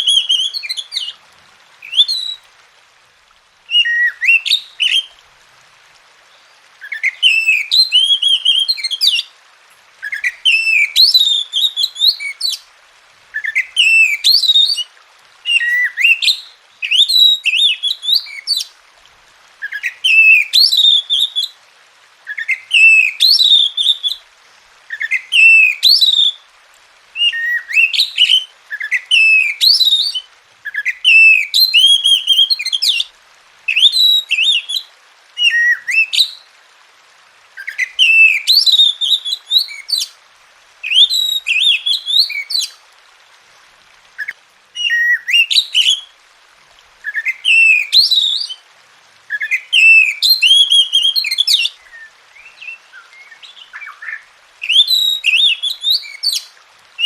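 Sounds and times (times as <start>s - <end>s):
bird singing whistled phrases: 0.0s - 1.2s, 1.8s - 2.4s, 3.7s - 5.1s, 6.8s - 9.3s, 10.0s - 12.6s, 13.4s - 14.9s, 15.5s - 18.7s, 19.6s - 21.5s, 22.3s - 24.2s, 24.9s - 26.4s, 27.2s - 33.1s, 33.7s - 34.8s, 35.4s - 36.5s, 37.6s - 40.1s, 40.8s - 42.8s, 44.2s - 46.1s, 47.0s - 48.6s, 49.3s - 56.5s.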